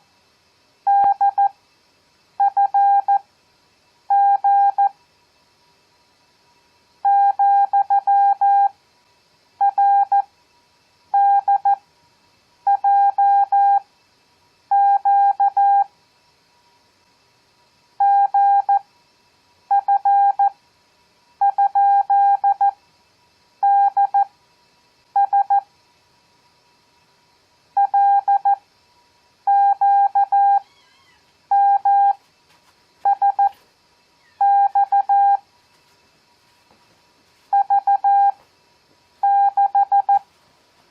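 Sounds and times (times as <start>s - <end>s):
morse code beeps: 0.9s - 1.5s, 2.4s - 3.2s, 4.1s - 4.9s, 9.6s - 10.2s, 11.2s - 11.8s, 12.7s - 13.8s, 14.8s - 15.9s, 18.0s - 18.8s, 19.7s - 20.5s, 21.4s - 22.7s, 23.6s - 24.3s, 25.2s - 25.6s, 27.8s - 28.6s, 29.5s - 30.6s, 31.5s - 32.2s, 33.0s - 33.6s, 34.4s - 35.4s, 37.5s - 38.4s, 39.2s - 40.2s.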